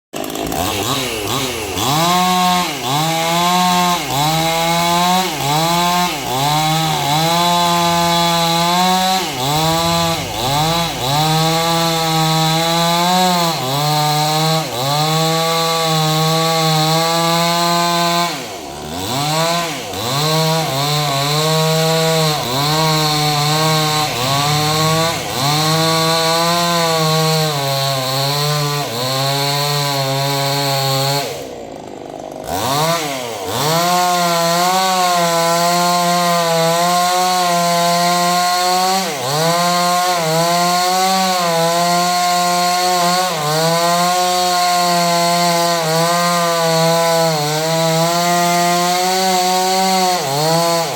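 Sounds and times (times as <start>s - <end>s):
chainsaw cutting wood: 0.1s - 50.9s.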